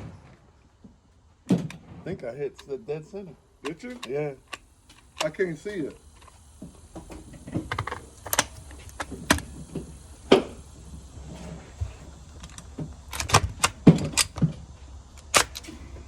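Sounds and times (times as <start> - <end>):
rifle metallic clacks: 3.6 - 9.6, 12.4 - 14.5, 15.2 - 15.8.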